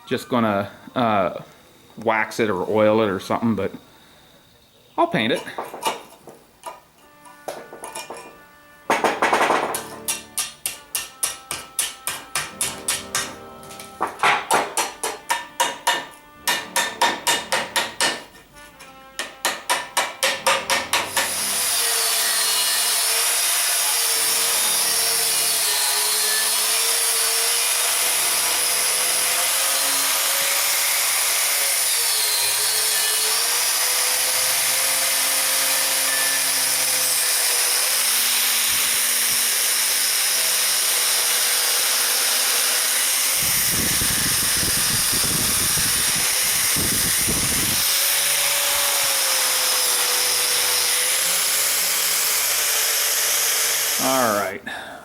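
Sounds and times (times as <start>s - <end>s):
rhythmic background music: 7.4s - 21.4s.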